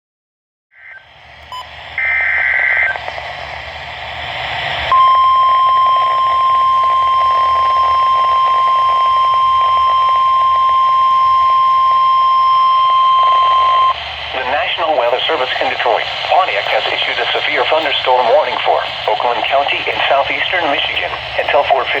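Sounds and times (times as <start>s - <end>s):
radio static hiss: 0.8s - 22.0s
steady warning alarm tone: 4.9s - 22.0s.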